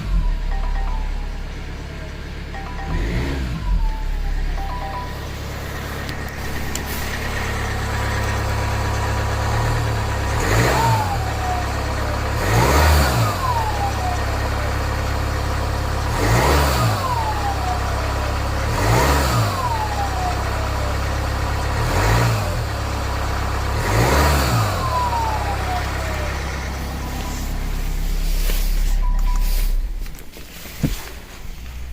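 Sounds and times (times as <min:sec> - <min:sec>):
diesel engine idling and revving: 0:00.0 - 0:31.9
turbocharger whistle: 0:10.4 - 0:14.7, 0:16.1 - 0:21.0, 0:23.8 - 0:28.1.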